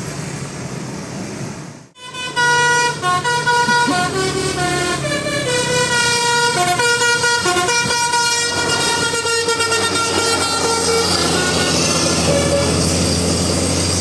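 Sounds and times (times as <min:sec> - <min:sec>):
road noise: 0:00.0 - 0:14.0
air horns playing a melody: 0:02.0 - 0:12.9.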